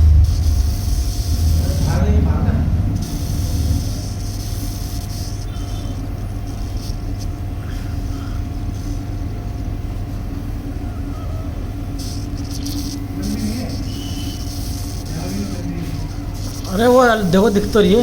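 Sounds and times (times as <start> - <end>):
air conditioner humming: 0.0 - 18.0.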